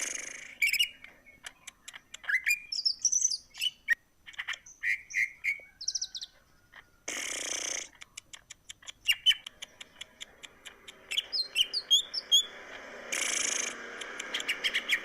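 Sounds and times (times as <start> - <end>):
bird singing whistles and chirps: 0.5 - 6.3, 9.0 - 9.5, 11.0 - 12.6, 13.2 - 15.0
rattling run of bird notes: 9.8 - 15.0
harsh bird call: 10.6 - 15.0.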